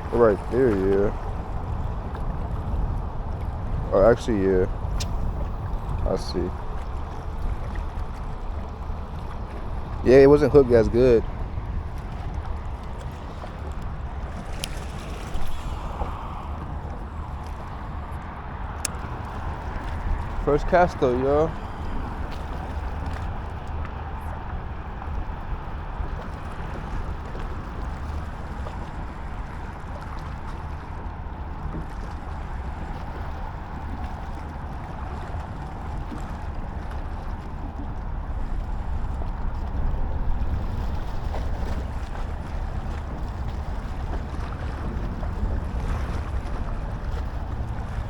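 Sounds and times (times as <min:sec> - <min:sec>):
wind buffeting microphone: 0:00.0 - 0:48.0.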